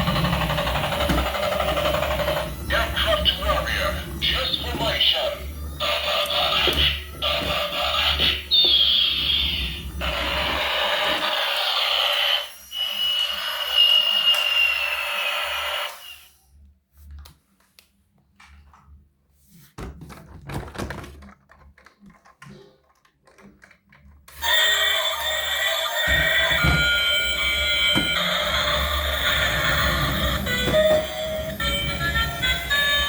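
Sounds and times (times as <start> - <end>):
electronic toy sound effects: 0.0 - 16.3, 24.3 - 33.0.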